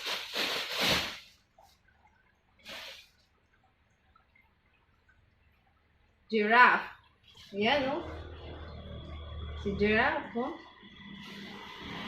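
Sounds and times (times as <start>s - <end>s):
packaged blanket rustling: 0.0s - 1.8s.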